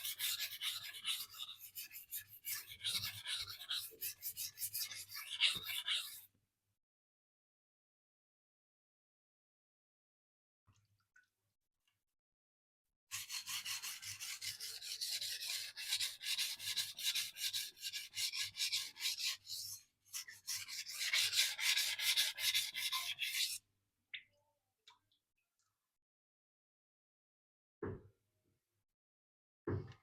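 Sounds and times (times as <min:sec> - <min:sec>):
knife grinding on sharpening stone: 0:00.0 - 0:06.3, 0:13.2 - 0:23.6.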